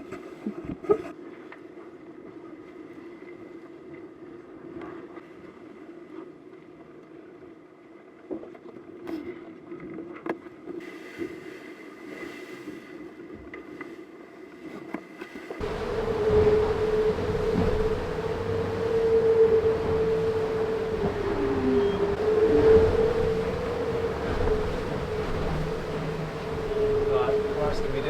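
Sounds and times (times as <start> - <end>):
boat knocks and clicks: 15.6 - 28.0
racing yacht hum on board: 15.6 - 28.0.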